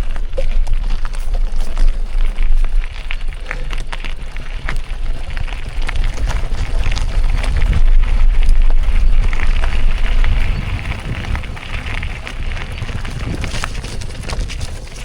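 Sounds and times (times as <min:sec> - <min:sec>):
bike rattling: 0:00.0 - 0:15.0
tyres crunching over stones: 0:00.0 - 0:15.0
wind buffeting microphone: 0:00.0 - 0:15.0.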